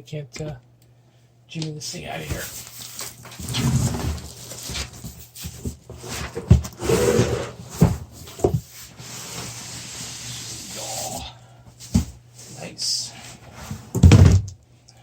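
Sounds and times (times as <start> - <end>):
foam and cardboard scraping: 2.0 - 11.2, 11.8 - 14.4.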